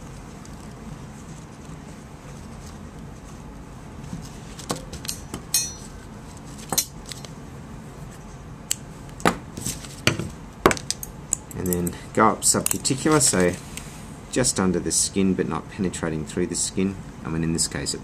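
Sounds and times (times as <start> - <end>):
metal surgical instruments clinking: 5.0 - 6.0.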